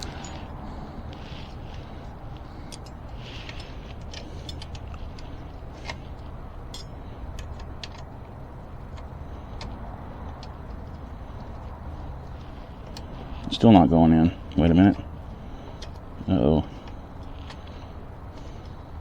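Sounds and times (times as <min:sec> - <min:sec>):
light metallic clicks and taps: 0:00.0 - 0:13.5
low background rumble: 0:00.0 - 0:19.0.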